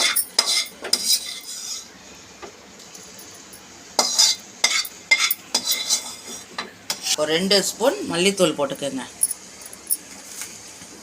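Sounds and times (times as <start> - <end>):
metal spoon scraping cookware: 0.0 - 1.9, 4.0 - 6.5.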